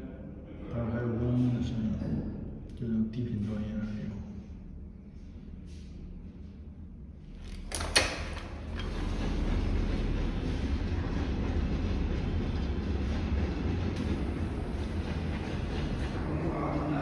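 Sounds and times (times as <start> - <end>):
train rumble: 0.8 - 17.0
deep low hum: 8.4 - 17.0.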